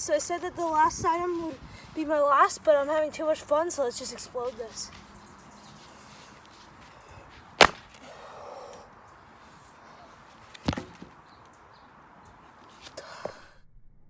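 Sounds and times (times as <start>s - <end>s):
sledgehammer blows: 7.6s - 8.0s.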